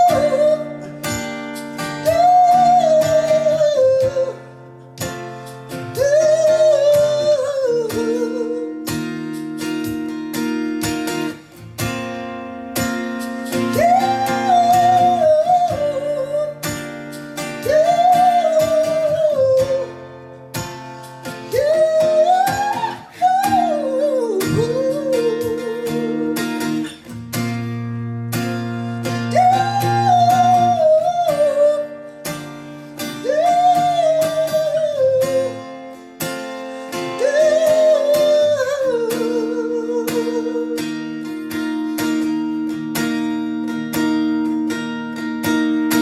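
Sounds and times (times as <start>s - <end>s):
acoustic guitar: 0.0s - 46.0s
person singing wordless melody: 1.9s - 4.6s, 5.9s - 8.9s, 13.7s - 16.6s, 17.6s - 20.1s, 21.4s - 26.7s, 29.2s - 32.1s, 33.1s - 35.8s, 37.0s - 41.1s.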